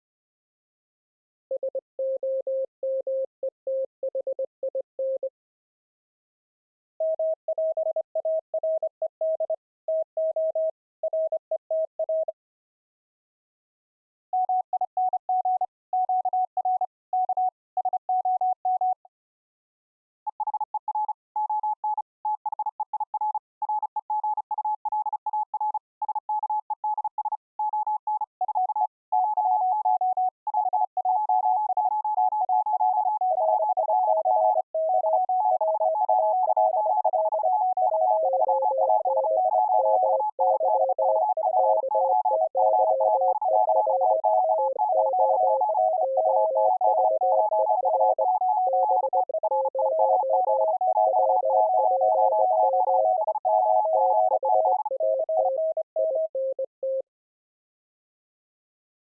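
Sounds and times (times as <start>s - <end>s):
morse code sine tones: 20.3s - 57.1s.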